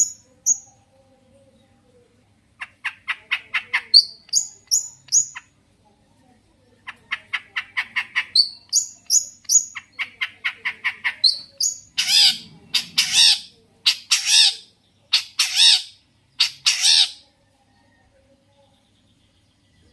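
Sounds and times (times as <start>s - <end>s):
bird singing chattering notes: 2.8s - 5.5s, 6.9s - 17.2s
bird coarse calls: 10.2s - 17.2s.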